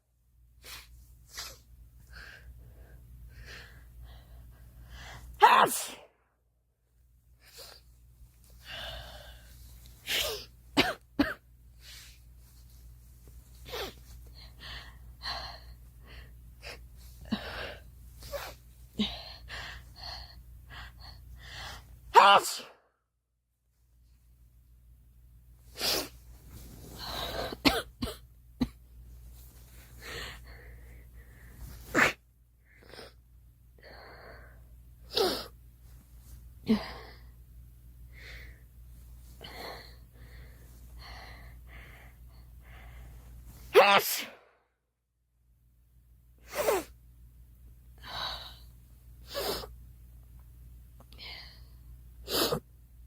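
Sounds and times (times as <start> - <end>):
girl sneezing: 5.4 - 6.1, 22.1 - 22.8, 31.9 - 32.2, 43.7 - 44.5, 46.4 - 47.0
girl gasping before a sneeze: 43.7 - 44.4.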